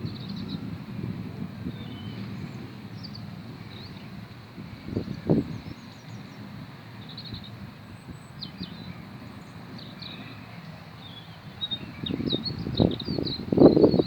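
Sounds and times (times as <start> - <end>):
small birds chirping: 0.0 - 0.7, 1.6 - 14.0
low gusts of noise: 0.0 - 14.0.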